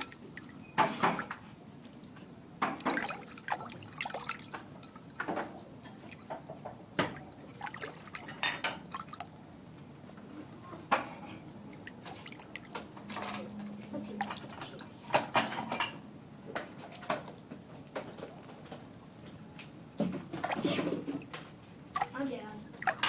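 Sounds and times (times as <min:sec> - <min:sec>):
kitten splashing in water bowl: 0:02.7 - 0:05.2, 0:05.8 - 0:09.4, 0:11.7 - 0:15.4, 0:19.6 - 0:23.0.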